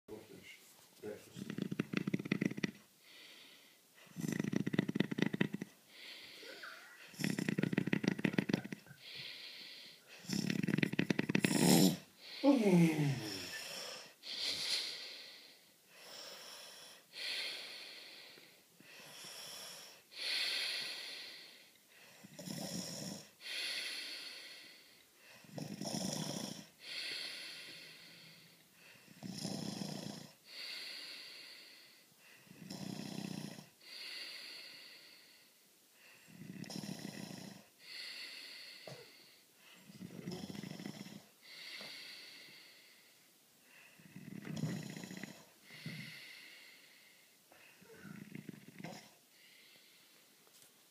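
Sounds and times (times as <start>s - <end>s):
person snoring: 1.3s - 21.6s, 22.2s - 35.4s, 36.2s - 39.2s, 39.9s - 42.8s, 43.9s - 47.2s, 47.8s - 50.0s
hissing breath: 11.5s - 22.2s.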